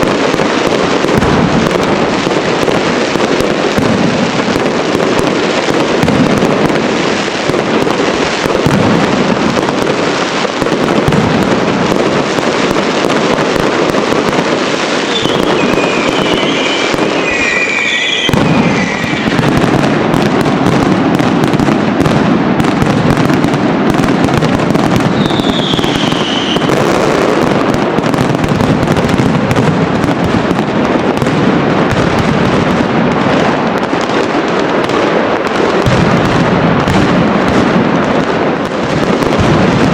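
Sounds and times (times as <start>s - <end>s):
fireworks bursting and crackling: 0.0s - 39.9s
firework whistles: 14.7s - 20.3s, 24.9s - 27.4s.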